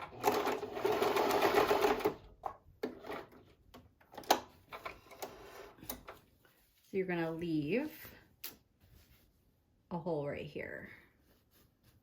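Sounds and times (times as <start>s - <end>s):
sewing machine running: 0.0s - 2.2s.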